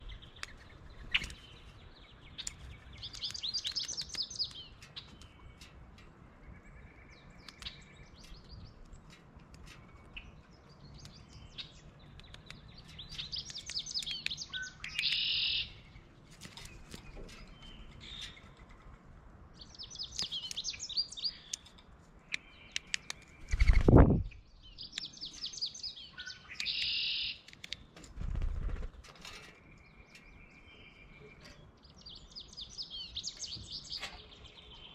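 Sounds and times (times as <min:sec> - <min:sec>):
birds singing and chirping: 0:00.0 - 0:34.9
sharp clicks: 0:02.3 - 0:06.2, 0:07.4 - 0:10.2, 0:10.8 - 0:15.3, 0:20.0 - 0:24.2, 0:24.8 - 0:25.6, 0:26.5 - 0:30.3.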